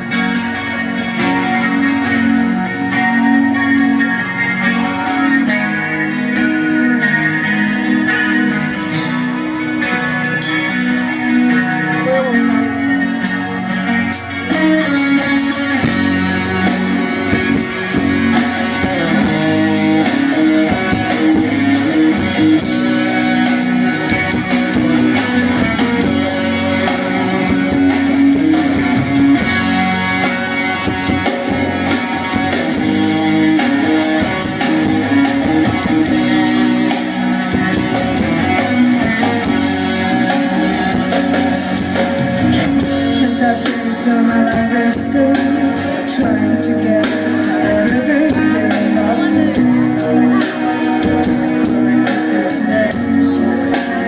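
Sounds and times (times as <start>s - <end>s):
drum kit beat: 0.0s - 54.0s
electric guitar: 0.0s - 54.0s.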